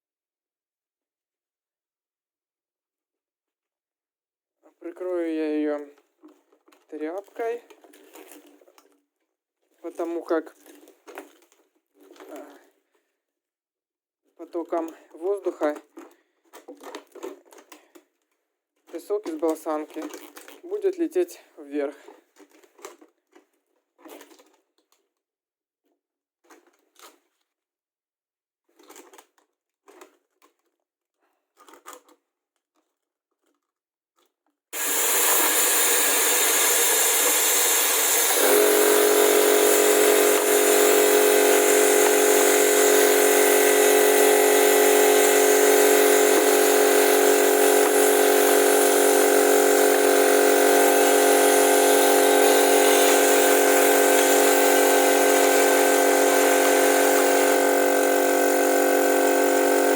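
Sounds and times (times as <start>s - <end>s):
multi-tone hum: 34.8s - 59.9s.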